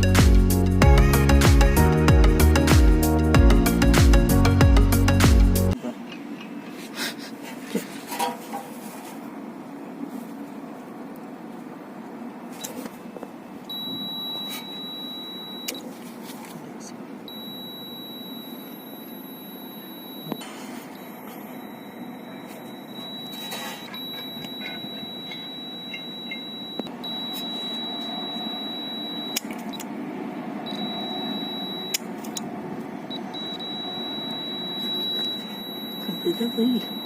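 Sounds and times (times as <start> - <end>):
low steady hum: 13.6 - 37.0
high-pitched beeper tone: 17.3 - 29.4, 30.7 - 32.0, 33.1 - 37.0.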